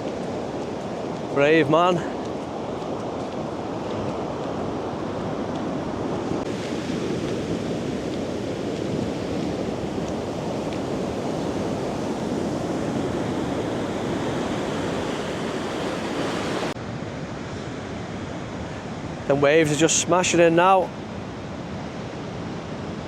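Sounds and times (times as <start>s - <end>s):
heavy surf waves breaking: 0.0s - 23.0s
wind noise on microphone: 2.2s - 19.2s.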